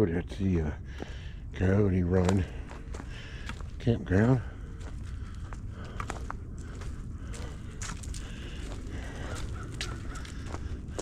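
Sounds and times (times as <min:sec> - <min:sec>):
footsteps on dirt trail: 0:00.9 - 0:11.0
harsh crow-like bird call: 0:09.4 - 0:10.4.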